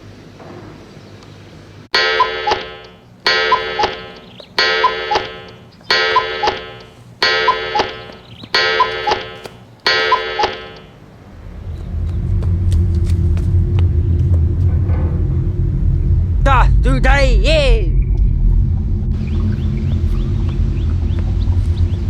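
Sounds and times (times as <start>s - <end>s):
faint steady rumble: 0.0s - 22.0s
electronic chime tone: 2.0s - 11.0s.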